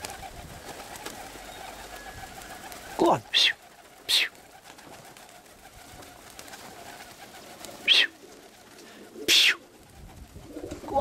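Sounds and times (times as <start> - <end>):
pigeons cooing: 0.0 - 11.0.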